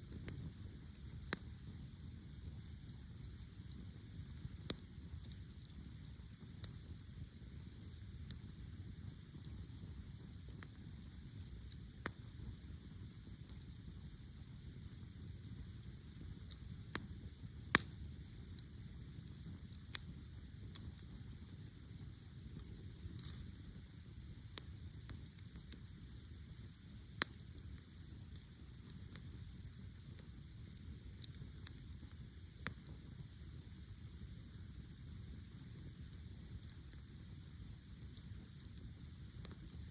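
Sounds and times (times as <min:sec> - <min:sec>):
crickets chirring: 0:00.0 - 0:39.9
campfire popping: 0:15.8 - 0:21.6.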